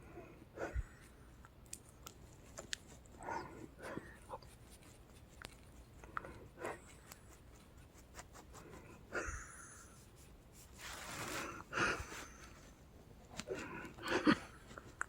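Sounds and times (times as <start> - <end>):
hard labored breathing: 0.0 - 1.3, 8.6 - 10.1, 11.3 - 15.0.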